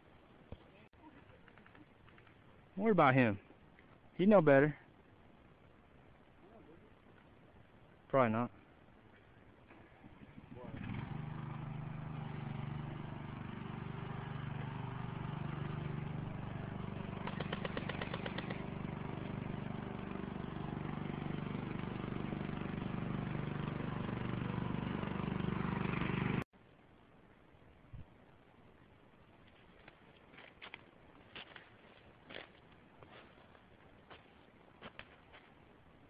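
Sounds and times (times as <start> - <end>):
engine-like drone: 10.2 - 26.4
rapid string of clicks: 17.2 - 18.7.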